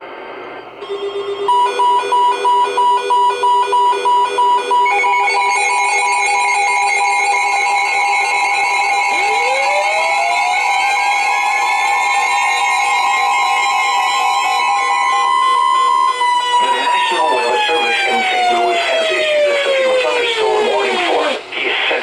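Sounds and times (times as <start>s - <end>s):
low steady electronic tone: 0.1s - 19.2s
rapid electronic beeping: 2.0s - 22.0s
steady higher tones: 4.9s - 22.0s
rising pitch glide: 8.7s - 20.4s.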